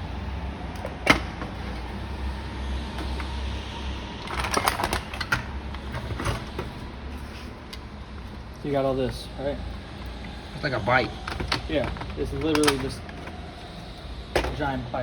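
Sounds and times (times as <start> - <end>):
steady low hum: 0.0 - 15.0
metal parts clinking: 4.3 - 5.4, 11.2 - 13.4.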